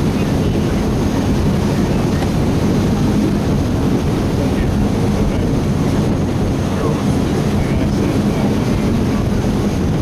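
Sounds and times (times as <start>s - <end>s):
boat engine droning: 0.0s - 10.0s
rushing water: 0.0s - 10.0s
wind buffeting microphone: 0.0s - 10.0s.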